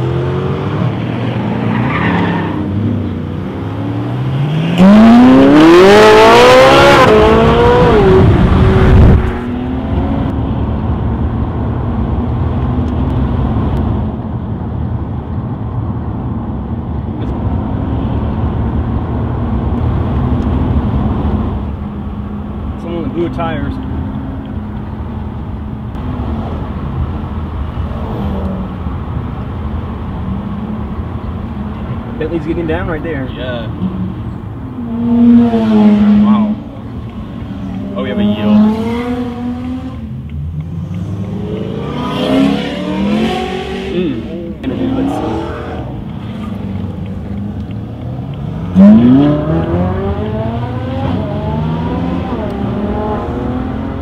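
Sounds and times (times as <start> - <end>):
car engines in traffic: 0.0 - 54.0.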